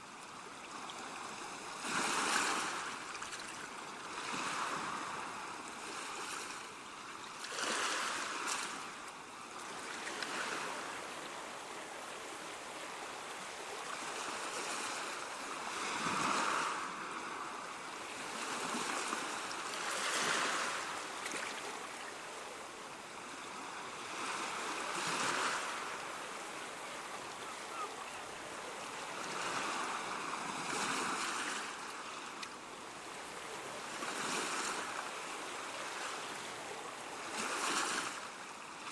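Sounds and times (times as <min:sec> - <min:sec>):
ocean waves breaking on shore: 0:00.0 - 0:38.9.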